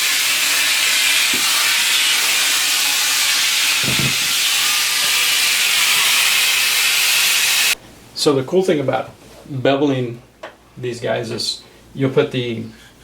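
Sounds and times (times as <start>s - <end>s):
loud steady hiss: 0.0s - 7.8s.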